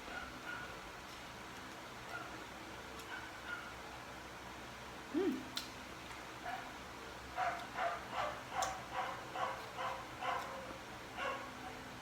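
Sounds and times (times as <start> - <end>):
dog barking: 0.1 - 0.7, 2.1 - 2.4, 3.1 - 3.8, 6.4 - 6.7, 7.4 - 11.6.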